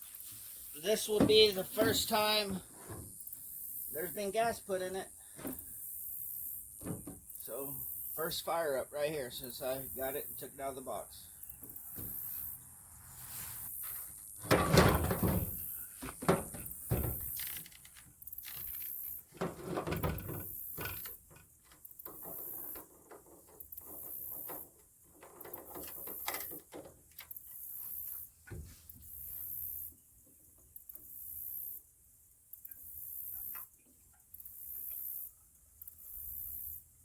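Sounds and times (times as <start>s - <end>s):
insects chirring: 0.1s - 30.0s, 30.7s - 37.0s
clunks and knocks handling gas can: 1.1s - 3.2s, 5.3s - 5.6s, 6.8s - 7.3s, 14.4s - 18.0s, 19.3s - 27.2s.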